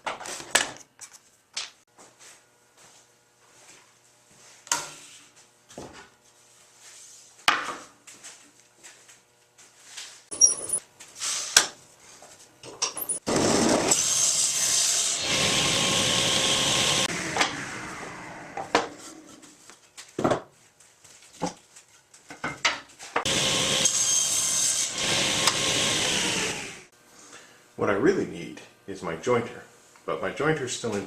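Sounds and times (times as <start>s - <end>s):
power woodworking tool running: 13.2s - 19.3s, 23.2s - 26.9s.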